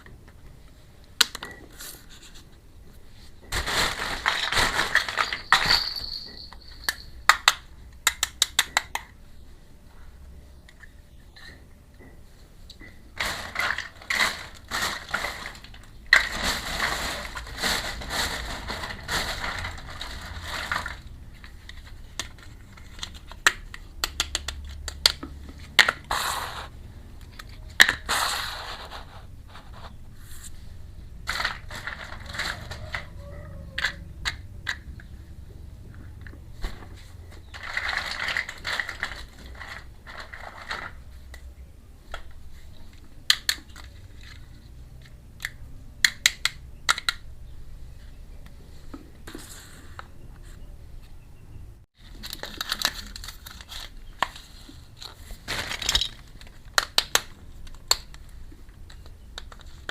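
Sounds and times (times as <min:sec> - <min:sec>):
packaging crinkling: 0:03.5 - 0:06.2, 0:13.2 - 0:23.4, 0:37.4 - 0:41.0, 0:52.0 - 0:58.1.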